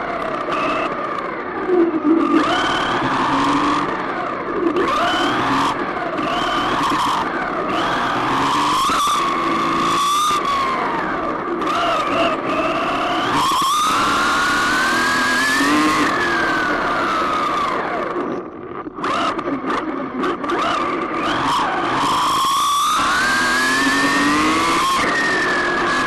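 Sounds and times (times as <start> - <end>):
toy car motor whining: 0.0 - 18.3, 19.0 - 26.0.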